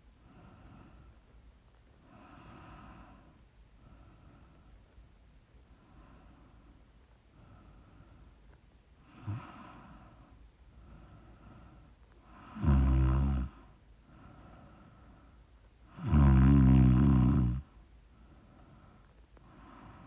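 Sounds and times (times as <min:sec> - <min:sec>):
quiet breathing: 0:00.0 - 0:20.0
woman snoring: 0:12.4 - 0:13.6, 0:16.0 - 0:17.7.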